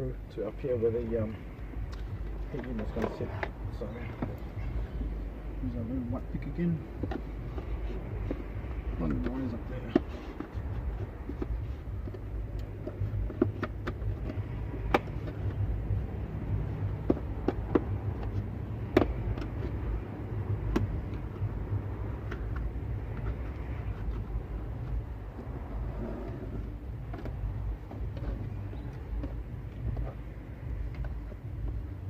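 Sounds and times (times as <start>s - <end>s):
low rumble: 14.0s - 32.0s.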